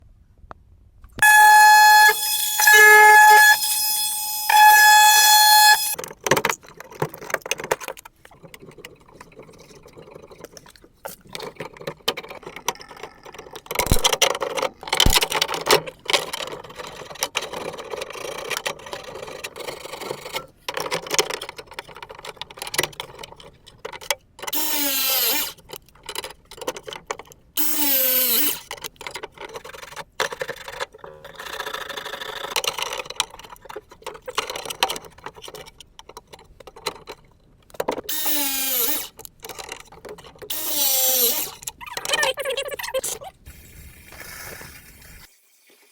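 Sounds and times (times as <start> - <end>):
horn-like blasts: 1.2 - 6.0
small motor running: 1.2 - 6.0, 24.6 - 25.6, 27.6 - 28.6, 38.1 - 39.1, 40.5 - 41.6.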